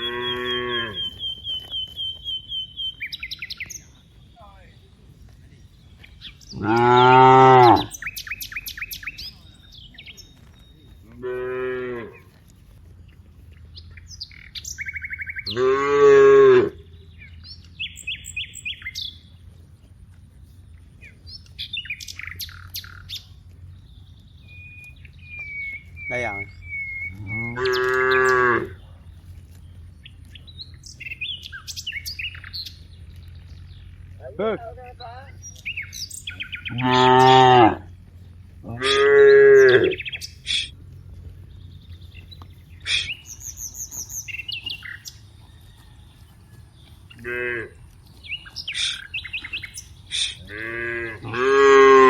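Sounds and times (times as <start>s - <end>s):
cows mooing: 0.0s - 1.3s, 6.5s - 8.1s, 11.1s - 12.3s, 15.4s - 16.9s, 26.1s - 28.8s, 35.8s - 38.0s, 38.6s - 40.8s, 47.1s - 47.8s, 50.1s - 52.0s
birds chirping: 0.0s - 52.0s.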